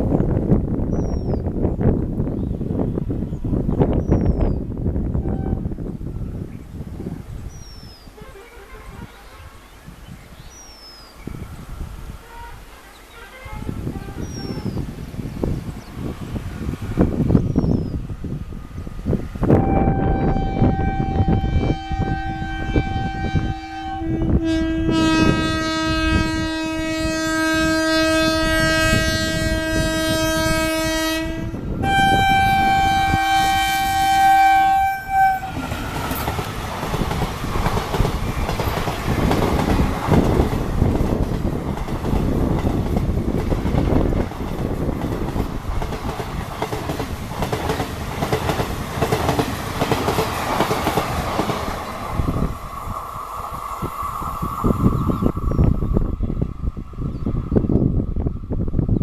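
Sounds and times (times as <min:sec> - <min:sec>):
locomotive horn: 0:05.2 - 0:05.8, 0:08.2 - 0:09.6, 0:12.2 - 0:14.8, 0:19.5 - 0:36.2
train wheels clattering: 0:35.5 - 0:52.4.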